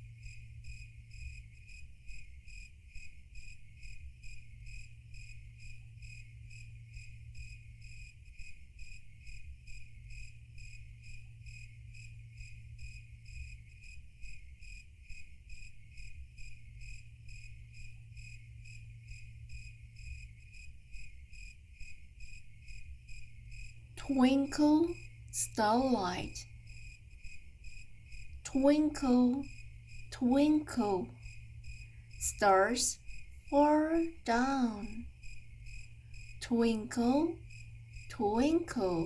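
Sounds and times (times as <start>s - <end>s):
crickets chirping: 0.0s - 39.0s
steady low hum: 15.7s - 39.0s.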